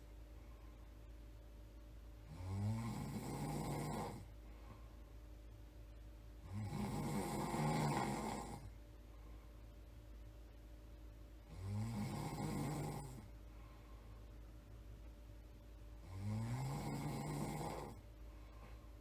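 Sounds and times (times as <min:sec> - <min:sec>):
person snoring: 0:02.3 - 0:04.3, 0:06.4 - 0:08.7, 0:11.5 - 0:13.3, 0:16.0 - 0:18.0.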